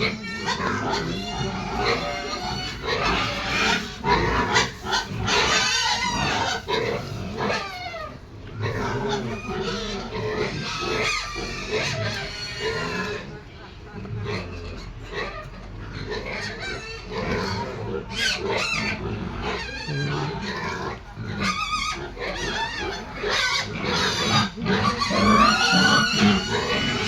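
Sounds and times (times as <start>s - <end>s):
pigs squealing: 0.0s - 27.0s.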